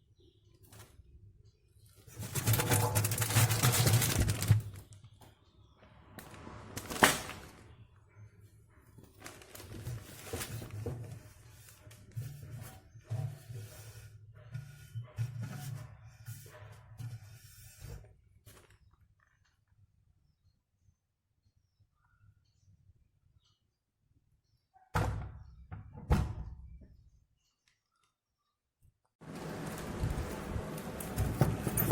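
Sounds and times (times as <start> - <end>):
handling rustling: 2.1 - 5.0, 6.2 - 7.8, 9.0 - 11.9, 29.2 - 31.9.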